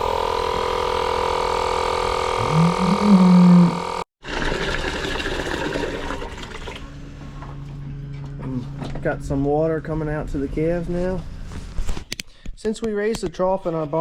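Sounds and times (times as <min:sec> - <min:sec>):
engine humming: 0:00.0 - 0:04.1.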